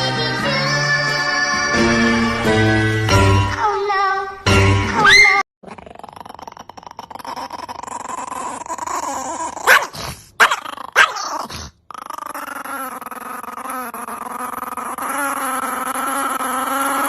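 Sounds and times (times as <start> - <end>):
dog growling: 5.6 - 17.0
dog barking: 9.6 - 11.4.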